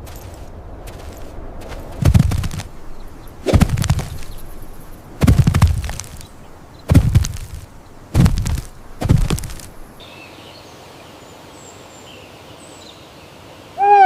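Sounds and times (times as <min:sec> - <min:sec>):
heavy thumps: 0:01.7 - 0:02.8, 0:03.4 - 0:10.0.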